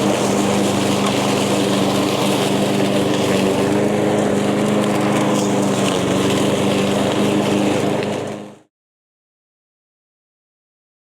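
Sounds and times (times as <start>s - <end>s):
lawn mower engine cutting grass: 0.0s - 8.7s.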